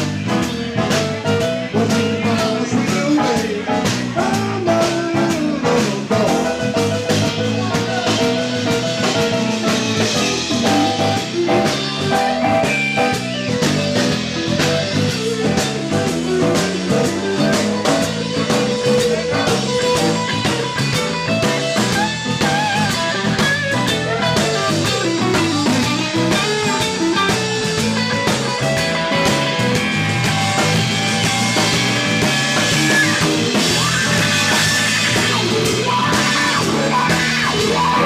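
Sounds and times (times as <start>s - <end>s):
bass guitar: 0.0s - 38.0s
drums keeping a steady beat: 0.0s - 38.0s
electric guitar lead: 0.0s - 38.0s.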